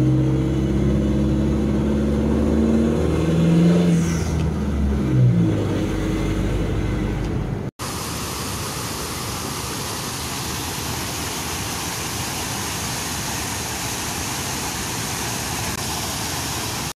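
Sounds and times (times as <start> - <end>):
waterfall rushing: 7.8 - 16.9.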